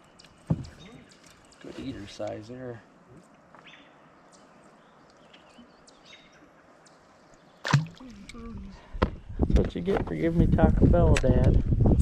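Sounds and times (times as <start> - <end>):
faint bird chirps: 3.5 - 8.5.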